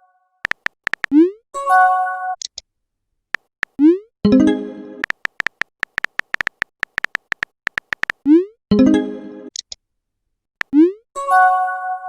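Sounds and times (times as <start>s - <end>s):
short clicks: 0.4s - 1.3s, 2.4s - 2.6s, 5.0s - 8.4s, 9.5s - 9.8s.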